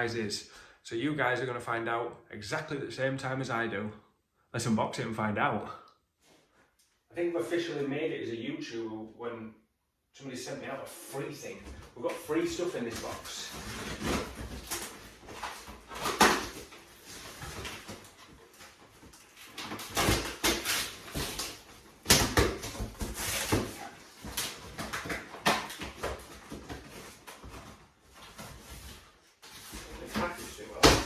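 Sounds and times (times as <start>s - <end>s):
cardboard box packaging rustling: 12.1s - 31.0s.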